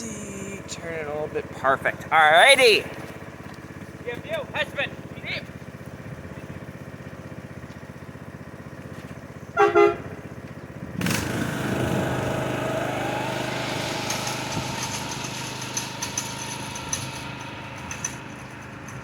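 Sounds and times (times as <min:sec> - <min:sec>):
engine idling and revving: 0:00.0 - 0:19.0
air horn double toot: 0:09.6 - 0:10.2.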